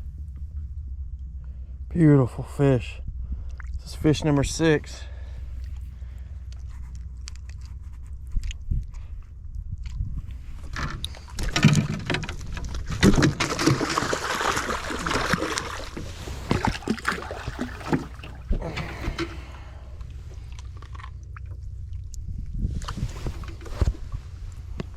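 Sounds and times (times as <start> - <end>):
low rumble: 0.0 - 24.9
water splashing around boat: 10.4 - 24.9.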